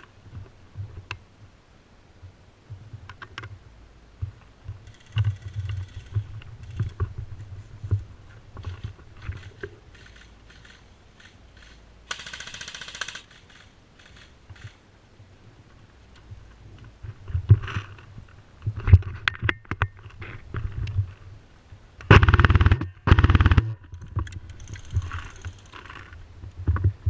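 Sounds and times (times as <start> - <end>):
airsoft guns firing: 9.4 - 14.8, 22.1 - 23.7
rapid full-auto burst: 9.4 - 14.8, 22.1 - 23.7.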